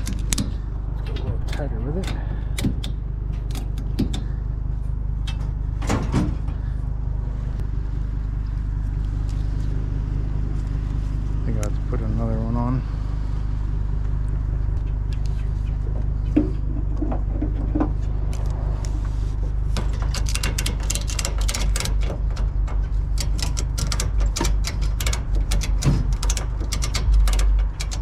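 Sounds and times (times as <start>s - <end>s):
strap rattling: 0.0s - 6.7s, 14.9s - 28.0s
low rumble: 0.0s - 28.0s
ratchet strap clicking: 19.8s - 28.0s.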